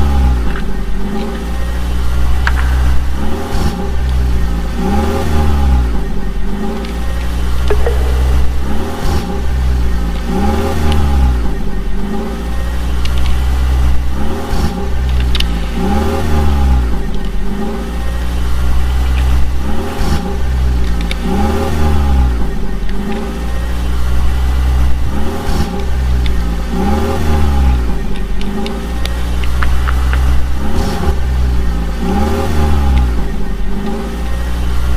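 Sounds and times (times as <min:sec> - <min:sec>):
engine revving up and down: 0:00.0 - 0:34.9
low hum: 0:07.6 - 0:10.5.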